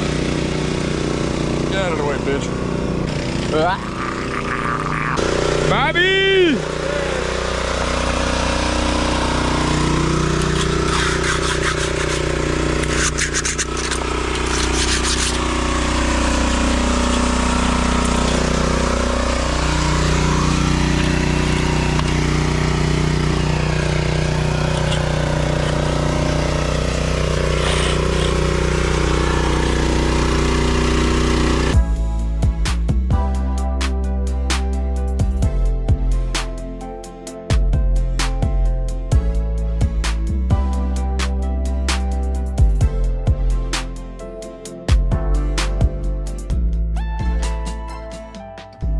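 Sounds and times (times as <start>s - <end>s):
power trowel engine running: 0.0s - 31.9s.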